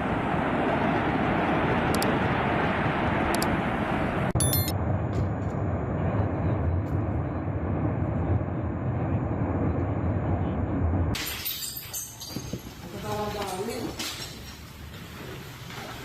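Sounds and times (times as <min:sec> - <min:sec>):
volcanic eruption deep roar: 0:00.0 - 0:11.2.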